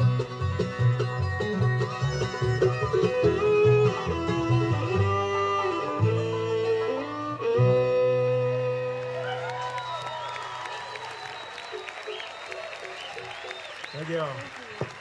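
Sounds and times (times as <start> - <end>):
bluegrass banjo and guitar music: 0.0 - 9.1.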